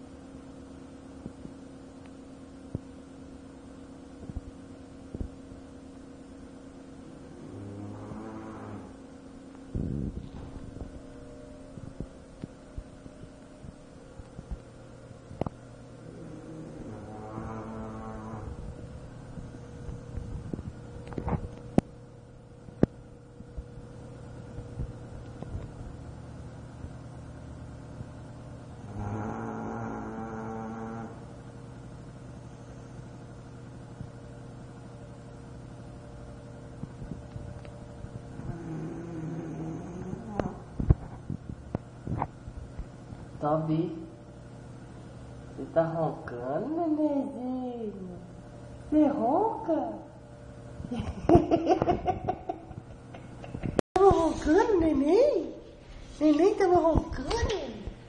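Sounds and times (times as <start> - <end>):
steady low hum: 0.0 - 58.0
pet snoring: 7.0 - 9.0, 16.0 - 18.6, 28.8 - 31.3, 38.3 - 40.7.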